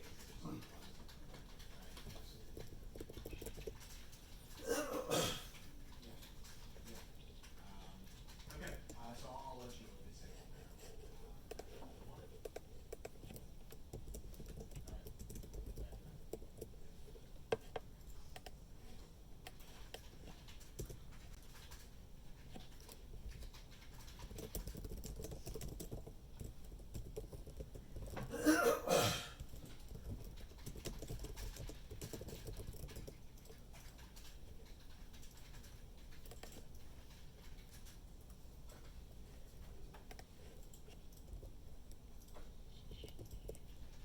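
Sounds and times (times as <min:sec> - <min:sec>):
typing on computer keyboard: 0:00.0 - 0:04.7, 0:05.5 - 0:10.0, 0:10.7 - 0:28.4, 0:29.4 - 0:39.0, 0:39.9 - 0:44.0
person coughing: 0:04.6 - 0:05.6, 0:28.3 - 0:29.4.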